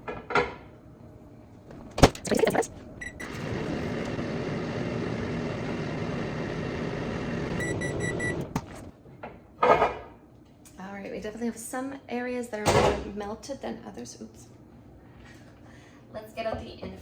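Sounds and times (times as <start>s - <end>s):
microwave humming: 1.7s - 8.9s
string of beeps: 2.2s - 2.7s
keypad beep: 7.6s - 8.4s.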